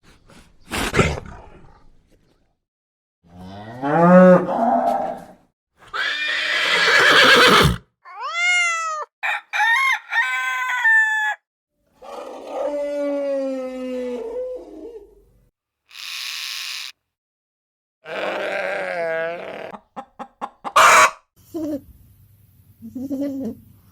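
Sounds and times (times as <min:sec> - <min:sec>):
animal calls: 0:18.0 - 0:21.2.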